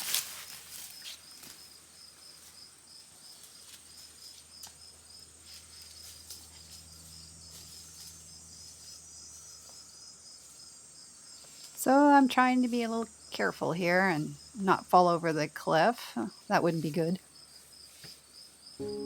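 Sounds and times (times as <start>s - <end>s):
insect chirping: 0.0s - 19.0s.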